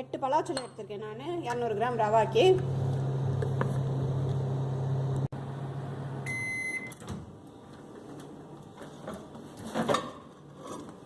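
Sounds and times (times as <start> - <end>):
microwave oven humming: 2.1 - 7.7.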